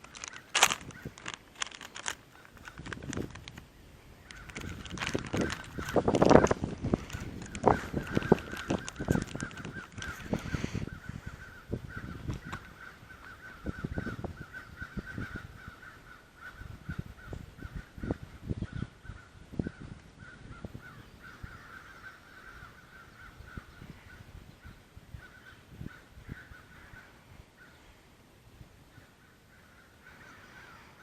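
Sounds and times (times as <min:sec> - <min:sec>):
crows cawing in alarm: 0:04.3 - 0:18.3, 0:19.8 - 0:27.9, 0:28.9 - 0:31.0.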